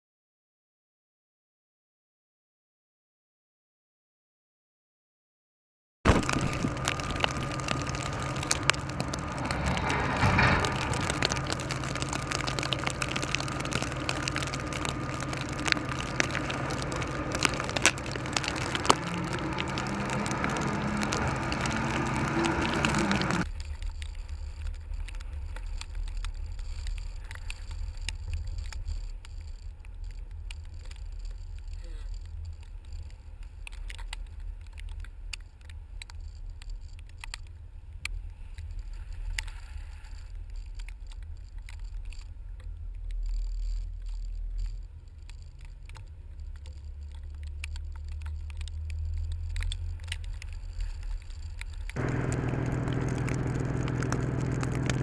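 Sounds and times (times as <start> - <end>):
car driving rumble: 6.1 - 23.5, 51.9 - 55.0
faint ticks: 6.2 - 55.0.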